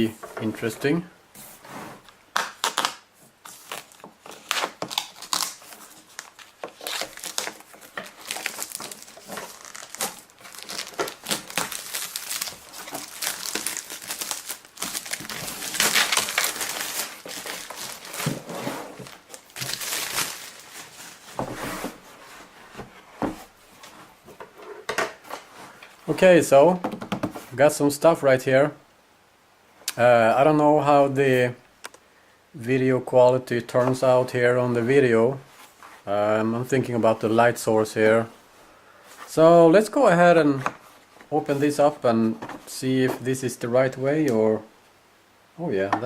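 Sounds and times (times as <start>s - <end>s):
packaging crinkling and tearing: 2.3s - 21.4s.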